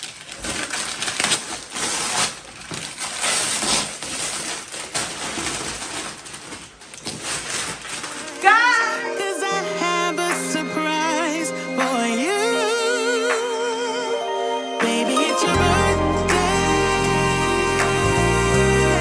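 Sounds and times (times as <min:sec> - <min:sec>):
packaging crinkling and rustling: 0:00.0 - 0:08.7.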